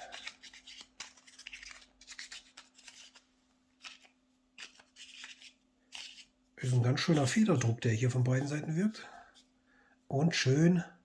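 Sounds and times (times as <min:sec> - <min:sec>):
flashlight cap scraping and rubbing: 0:00.1 - 0:06.3.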